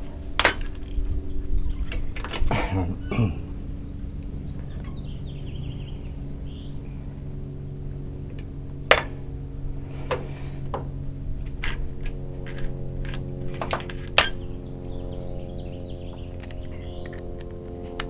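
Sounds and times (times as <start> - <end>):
low hum: 0.0 - 18.0
metal parts clinking: 2.1 - 2.4, 11.6 - 14.5.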